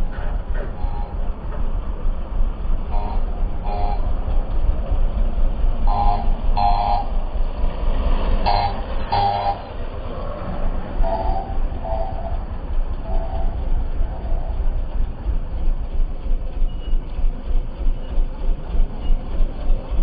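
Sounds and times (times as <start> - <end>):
road riding rumble: 0.0 - 20.0
vehicle horn double beeps: 2.9 - 4.1, 5.9 - 7.1, 8.5 - 9.7.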